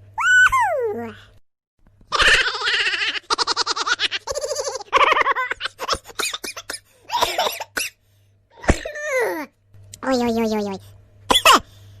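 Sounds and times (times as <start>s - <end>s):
cartoon cackling laugh: 2.1s - 6.7s.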